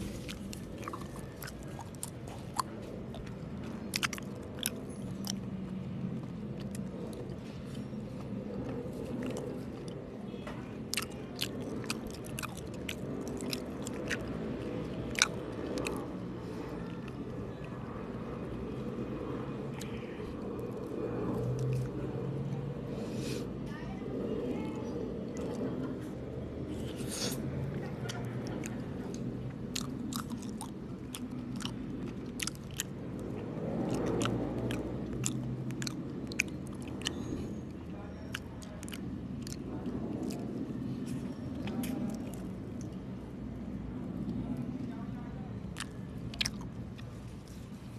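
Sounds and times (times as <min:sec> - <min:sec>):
close chewing: 0:00.0 - 0:10.1, 0:10.9 - 0:18.1, 0:19.7 - 0:22.0, 0:26.9 - 0:43.0, 0:45.6 - 0:47.9
low background hum: 0:00.0 - 0:47.9
wet mouth clicks: 0:00.2 - 0:05.4, 0:10.9 - 0:14.4, 0:15.1 - 0:16.1, 0:29.8 - 0:37.5.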